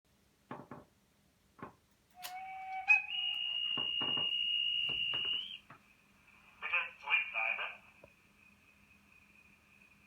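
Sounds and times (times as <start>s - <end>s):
high whistle-like tone: 2.2s - 5.6s.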